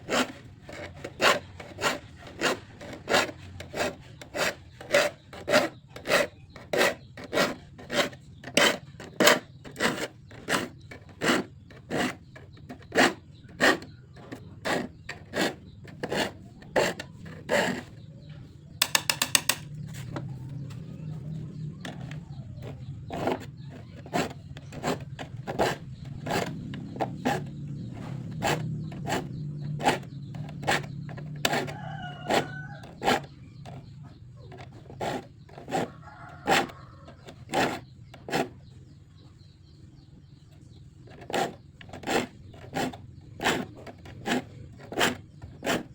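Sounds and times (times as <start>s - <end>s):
file rasping saw teeth: 0.0s - 20.2s, 21.2s - 39.8s, 40.6s - 45.9s
quick run of clicks: 18.8s - 33.3s.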